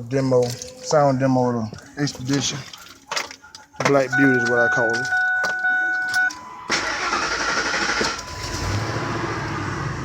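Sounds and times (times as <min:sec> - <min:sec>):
car engine cranking and running: 0:02.4 - 0:10.0.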